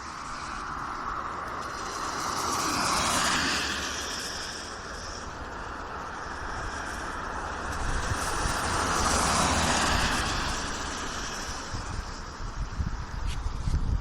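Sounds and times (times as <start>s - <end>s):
tyres hissing on wet road: 0.0s - 14.0s
wind rumble on microphone: 0.0s - 14.0s.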